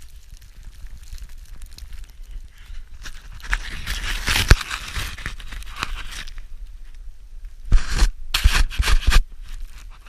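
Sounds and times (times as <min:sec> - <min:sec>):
crunching in snow: 0:00.0 - 0:06.5.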